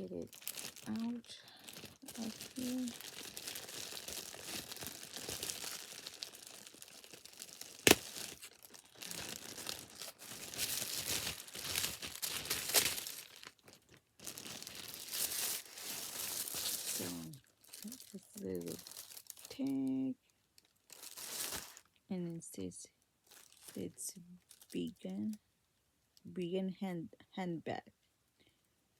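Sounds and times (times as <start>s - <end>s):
packaging crinkling and rustling: 0.0s - 19.9s, 20.6s - 21.9s, 23.3s - 25.0s.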